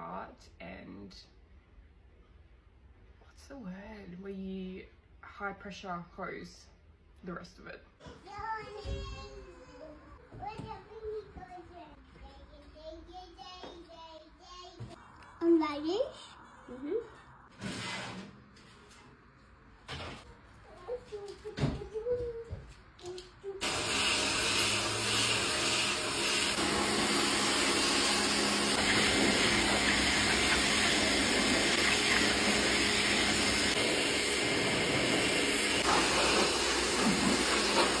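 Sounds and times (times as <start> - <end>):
pressure washer spray hissing: 23.6 - 38.0.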